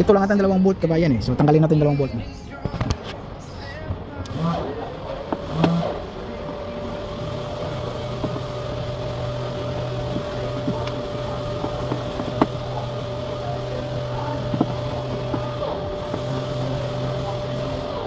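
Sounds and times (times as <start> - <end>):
steady mechanical hum: 0.0 - 18.0.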